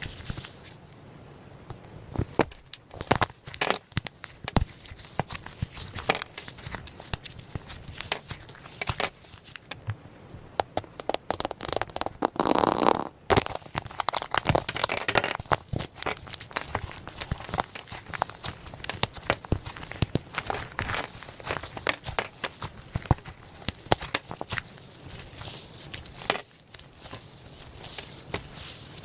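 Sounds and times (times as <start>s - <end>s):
slime crackling and popping: 2.3s - 9.8s, 10.6s - 29.0s
slime squish: 10.6s - 29.0s.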